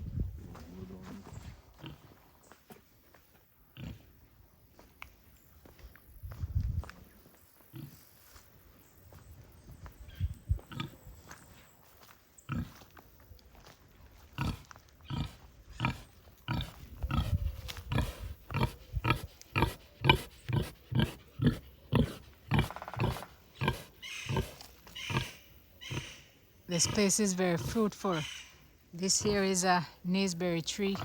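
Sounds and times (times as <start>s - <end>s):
pigs grunting: 14.4s - 28.2s, 29.0s - 29.7s.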